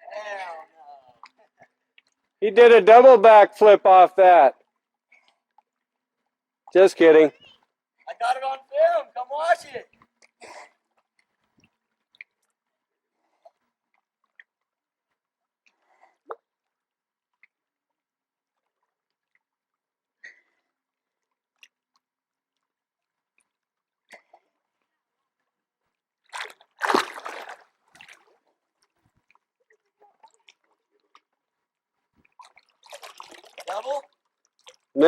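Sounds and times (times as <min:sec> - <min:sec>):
splash into water: 0:26.3 - 0:28.3, 0:32.3 - 0:34.8
water sloshing: 0:26.3 - 0:28.4, 0:32.2 - 0:34.9.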